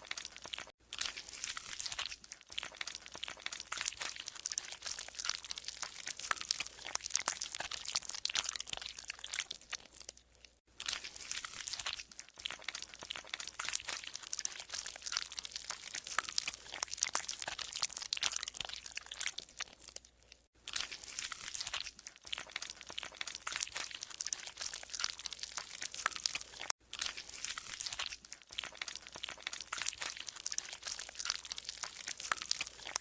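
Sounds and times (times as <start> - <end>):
slime squelching and popping: 0.0 - 33.0.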